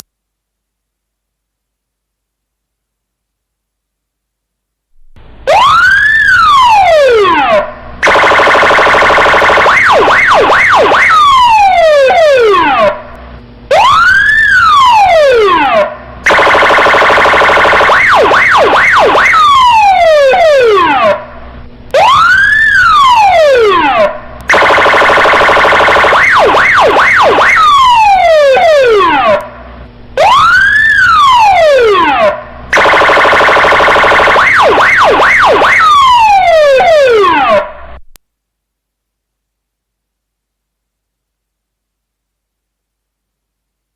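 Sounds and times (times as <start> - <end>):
police car siren: 5.4 - 38.0.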